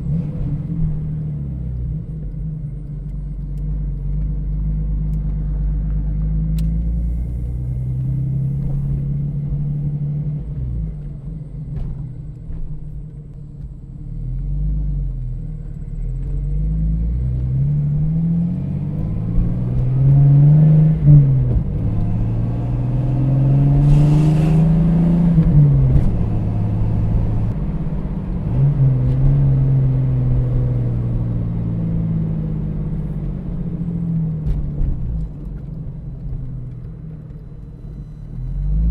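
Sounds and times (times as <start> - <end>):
deep exhaust rumble: 0.0 - 38.9.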